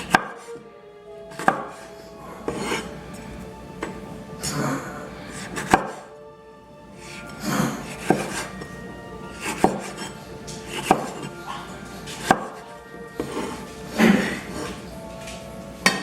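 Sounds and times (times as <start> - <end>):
knife chopping on cutting board: 0.0 - 0.5, 1.3 - 1.9, 2.5 - 2.9, 5.3 - 6.0, 7.1 - 8.7, 9.4 - 11.4, 12.1 - 14.7
background music: 0.0 - 16.0
knife scraping cutting board: 1.3 - 3.0, 5.3 - 6.1, 7.0 - 8.7, 9.3 - 14.8.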